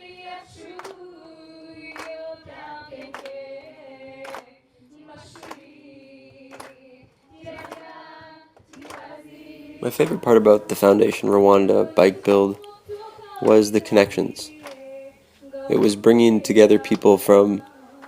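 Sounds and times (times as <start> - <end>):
choir singing long held notes: 0.0 - 18.0
sharp clap or drum beat: 0.6 - 4.6, 5.2 - 9.3, 9.9 - 10.3, 14.5 - 14.9.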